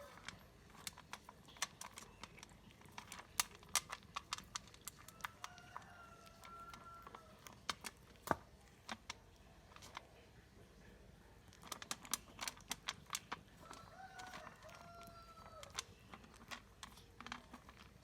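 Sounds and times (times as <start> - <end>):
cat chewing food: 0.0 - 18.0.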